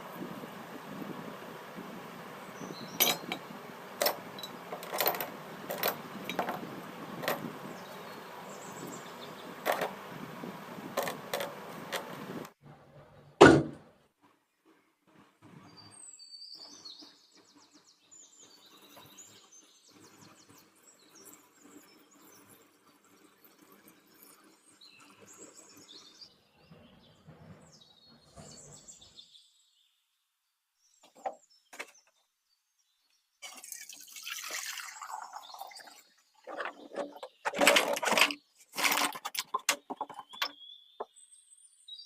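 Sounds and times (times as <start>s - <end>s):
loud thump: 13.4s - 13.8s.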